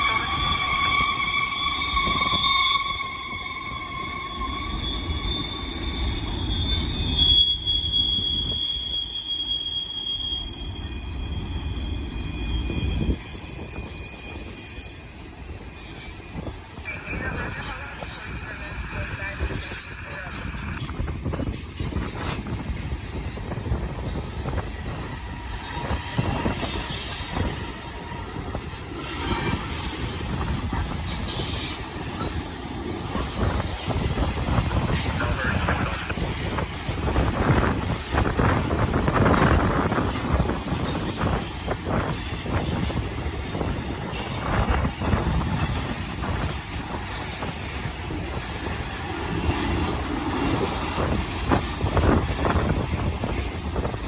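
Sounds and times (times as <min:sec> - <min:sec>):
high-pitched wheel squeal: 0:00.0 - 0:16.8
train wheels squealing: 0:00.0 - 0:53.9
rumble of passing train cars: 0:00.0 - 0:54.0.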